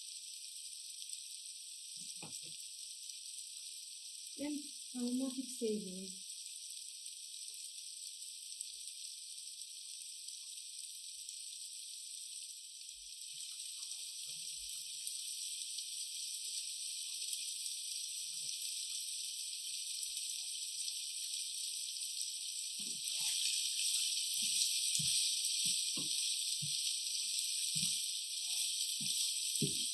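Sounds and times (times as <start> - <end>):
food sizzling in oil: 0.0 - 29.9.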